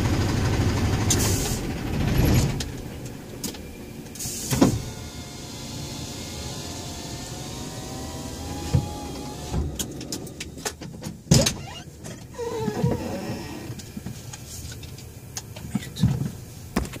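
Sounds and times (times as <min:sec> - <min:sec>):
diesel truck engine running: 0:00.0 - 0:11.3.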